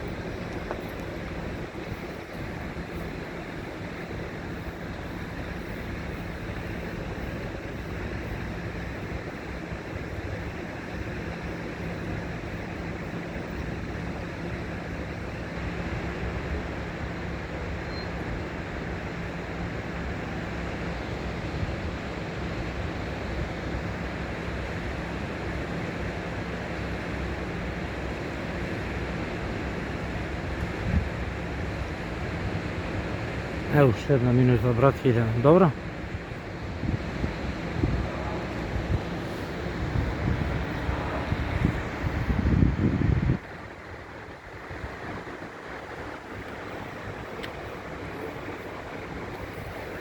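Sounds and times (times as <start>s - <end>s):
city traffic: 0.0s - 50.0s
flowing river water: 0.0s - 50.0s.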